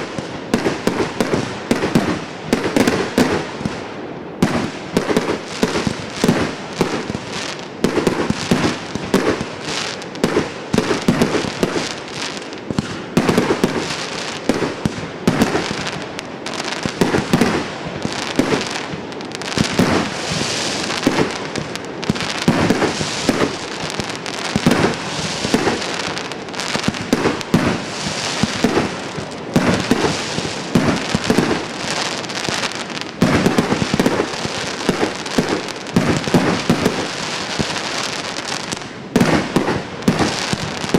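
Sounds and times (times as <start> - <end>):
firework barrage bangs: 4.4 - 40.9.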